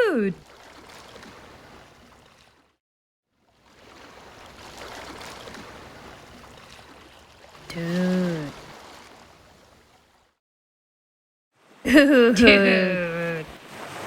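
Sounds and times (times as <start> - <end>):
flowing splashing water: 0.0 - 2.7, 3.5 - 10.4.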